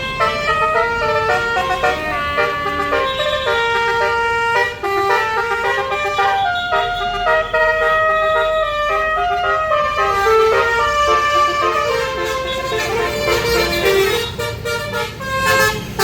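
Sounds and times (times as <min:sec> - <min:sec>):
bus horn playing a tune: 0:00.0 - 0:16.0.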